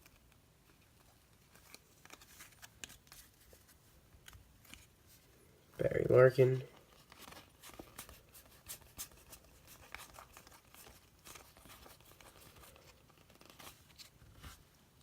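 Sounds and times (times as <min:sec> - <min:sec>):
trading cards clicking and rustling: 0:06.5 - 0:14.6.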